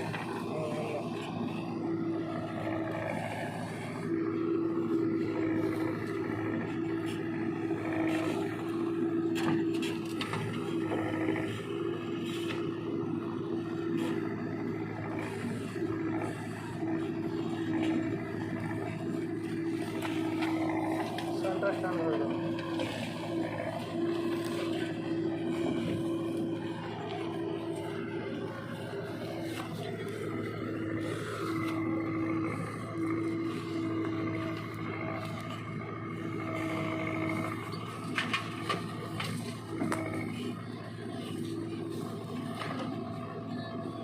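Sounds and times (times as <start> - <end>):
diesel engine running: 0.0 - 44.0
higher engine tone: 0.0 - 44.0.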